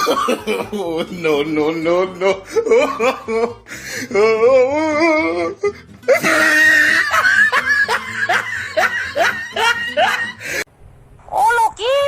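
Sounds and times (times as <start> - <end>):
music: 0.0 - 10.6
person laughing: 0.0 - 10.6.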